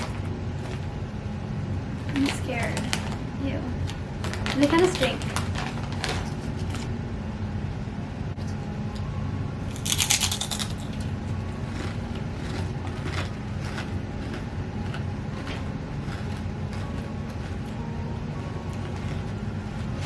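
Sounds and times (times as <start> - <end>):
chip crunching while chewed: 9.7 - 17.8, 18.7 - 20.0.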